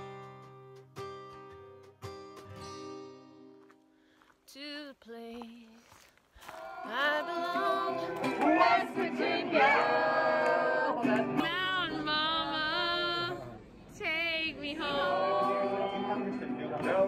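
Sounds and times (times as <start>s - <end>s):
plucked guitar: 0.0s - 3.8s, 6.8s - 17.0s
person singing: 6.7s - 10.0s.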